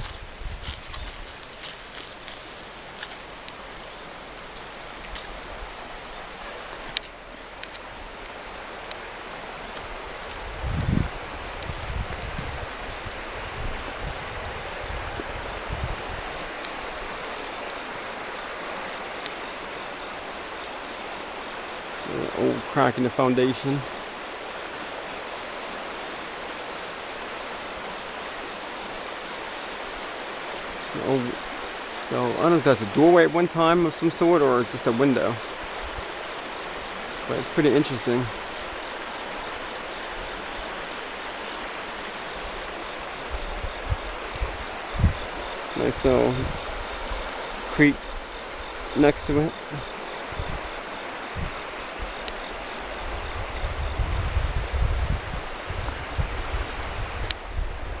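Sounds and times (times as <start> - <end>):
footsteps snapping twigs: 0.0 - 3.6, 4.6 - 5.4
creek rushing: 0.0 - 58.0
high insect drone: 0.0 - 58.0.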